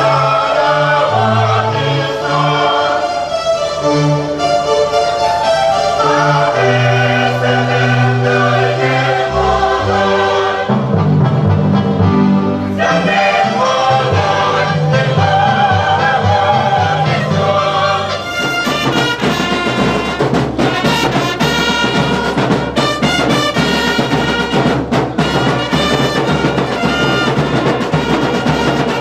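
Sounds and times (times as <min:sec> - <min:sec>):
person singing: 0:00.0 - 0:03.4, 0:05.9 - 0:10.8, 0:12.6 - 0:18.5
brass and percussion music: 0:00.0 - 0:29.0.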